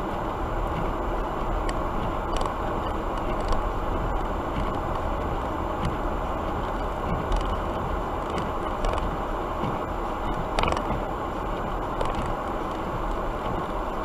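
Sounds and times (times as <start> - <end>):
vehicle engine rumbling: 0.0 - 14.0.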